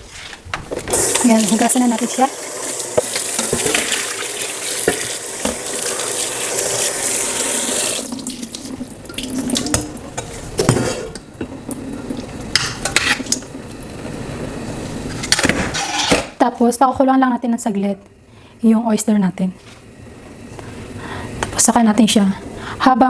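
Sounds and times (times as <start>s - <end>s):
tap water running into sink: 0.9s - 15.0s.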